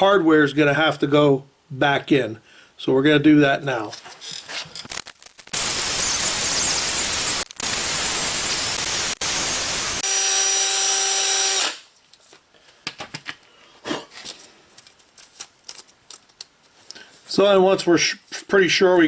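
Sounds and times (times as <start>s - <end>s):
wire brush drill scrubbing metal: 4.9s - 10.0s
drill whine: 4.9s - 11.8s.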